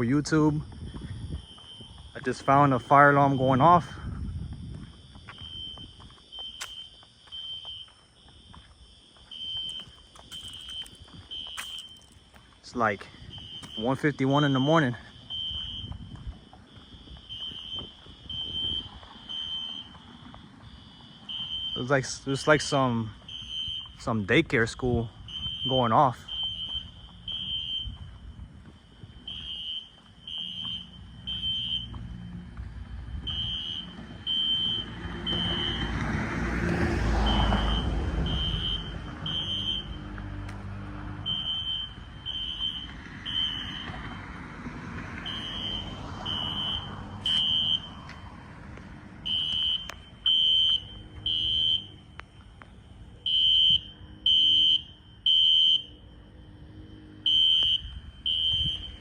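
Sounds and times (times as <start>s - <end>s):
fire alarm horns beeping: 0.0s - 32.2s, 32.8s - 36.0s, 37.0s - 40.5s, 41.2s - 44.2s, 45.2s - 48.3s, 49.2s - 59.0s
vehicle passing: 30.3s - 59.0s.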